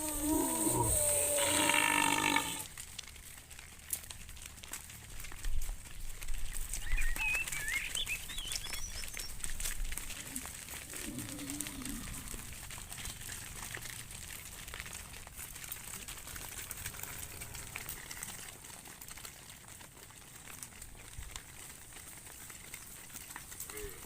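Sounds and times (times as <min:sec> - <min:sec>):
low animal call: 0:00.0 - 0:02.7, 0:10.1 - 0:12.6, 0:23.6 - 0:24.0
crackling and rustling noise: 0:00.0 - 0:24.0.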